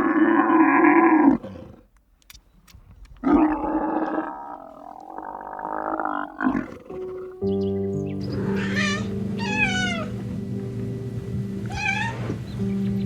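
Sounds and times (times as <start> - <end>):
large animal calling: 3.2 - 7.6.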